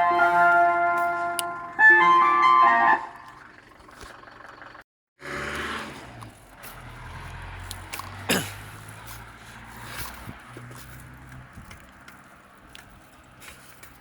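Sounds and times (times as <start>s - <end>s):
ice cream van chime tune: 0.0s - 3.6s
street noise: 0.0s - 14.0s
vehicle engine running: 0.0s - 14.0s.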